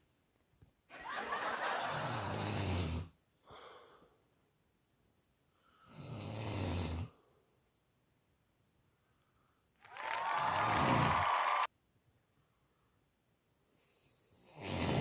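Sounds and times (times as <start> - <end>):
person snoring: 1.9 - 3.1, 10.6 - 11.3, 14.4 - 15.0
soft breath: 3.4 - 4.4, 5.4 - 6.0, 8.8 - 9.8, 12.2 - 14.4.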